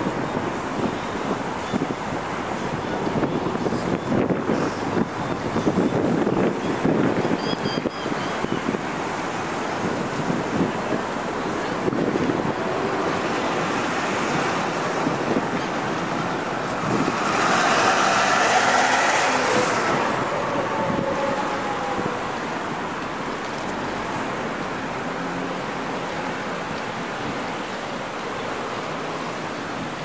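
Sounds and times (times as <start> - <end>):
road traffic passing: 0.0 - 30.0.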